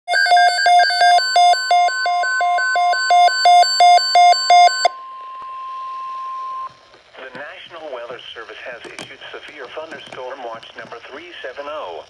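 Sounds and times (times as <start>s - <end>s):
alternating low and high beeps: 0.1s - 6.8s.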